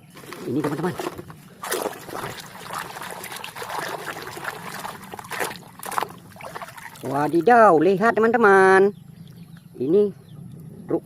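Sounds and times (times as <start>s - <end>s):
water splashes: 0.0s - 8.0s
water trickling and sloshing: 0.0s - 8.1s.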